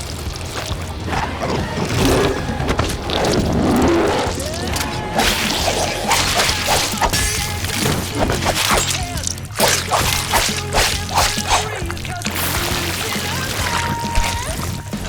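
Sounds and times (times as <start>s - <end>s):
background music: 0.0s - 15.0s
whooshes: 0.4s - 9.0s
sharp hits: 1.1s - 15.0s.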